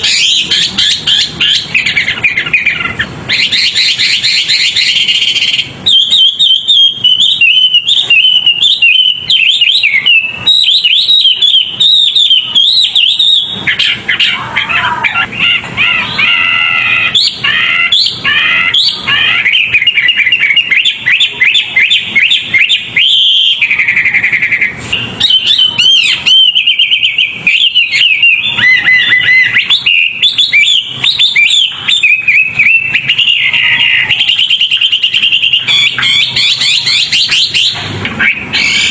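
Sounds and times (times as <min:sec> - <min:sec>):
songbird chirping and trilling: 0:00.0 - 0:38.9.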